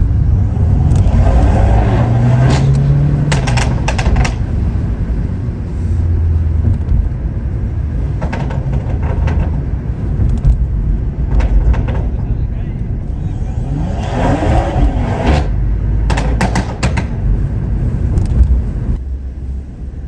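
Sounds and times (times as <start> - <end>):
car engine droning: 0.0 - 20.0
exhaust pops and crackles: 0.0 - 20.0.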